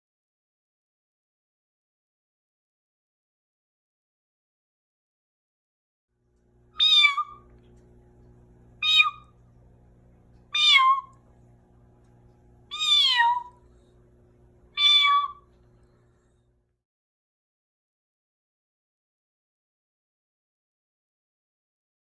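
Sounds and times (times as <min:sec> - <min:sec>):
faint low hum: 0:06.2 - 0:16.8
animal mewing call: 0:06.8 - 0:07.5, 0:08.8 - 0:09.4, 0:10.5 - 0:11.2, 0:12.7 - 0:13.6, 0:14.7 - 0:15.6.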